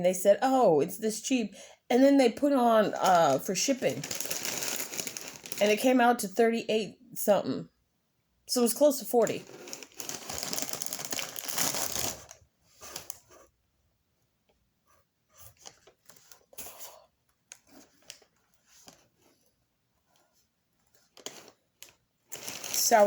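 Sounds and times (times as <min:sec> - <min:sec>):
plastic bag crinkling: 0:02.8 - 0:06.0, 0:09.2 - 0:13.3, 0:21.0 - 0:23.0.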